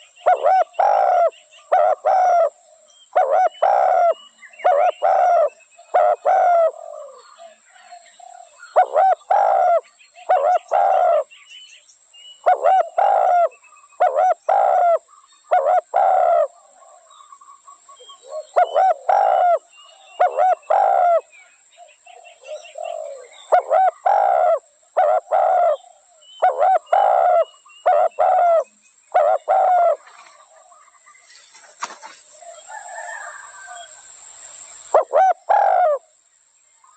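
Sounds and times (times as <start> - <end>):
dove cooing: 0.0 - 7.6, 8.2 - 11.3, 12.4 - 17.2, 18.0 - 30.8, 34.9 - 36.0.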